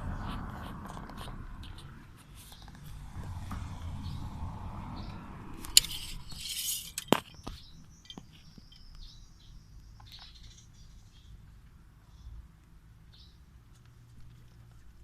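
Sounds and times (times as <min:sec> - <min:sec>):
rustle: 0:00.0 - 0:15.0
faint high chirping: 0:05.0 - 0:11.4.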